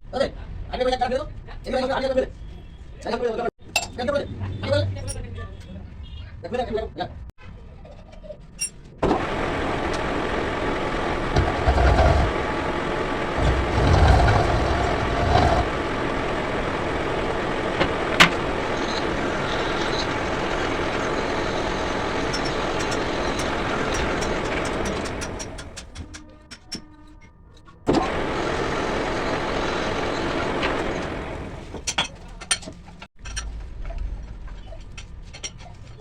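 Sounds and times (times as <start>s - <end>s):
lathe machine humming: 9.0s - 26.1s, 27.9s - 31.9s
low rumbles: 9.1s - 26.0s, 27.9s - 31.9s.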